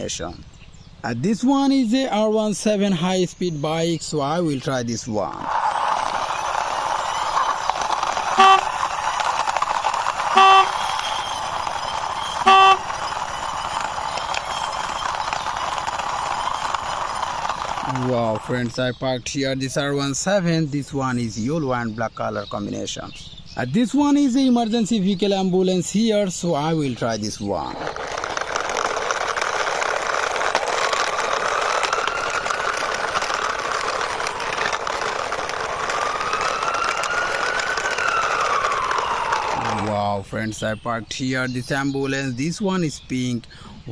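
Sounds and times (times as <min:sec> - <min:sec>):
toy motorbike whirring rolling: 0:05.4 - 0:18.9, 0:26.6 - 0:40.1
toy horn toots: 0:08.0 - 0:13.4.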